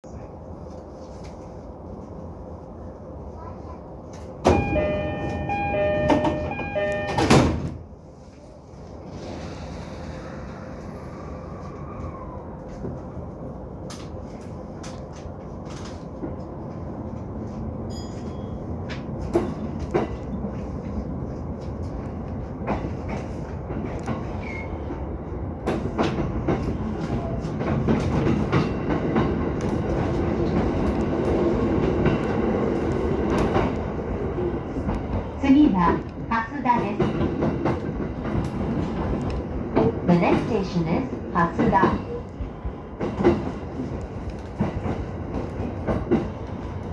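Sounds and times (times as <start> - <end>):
electric train running: 4.5 - 7.7.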